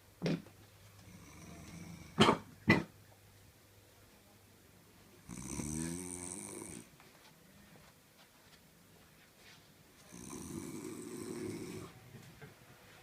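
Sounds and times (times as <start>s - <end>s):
heavy snoring: 1.0s - 2.2s, 5.2s - 6.9s, 10.1s - 12.0s
loud snorts: 5.3s - 6.9s, 10.1s - 11.9s.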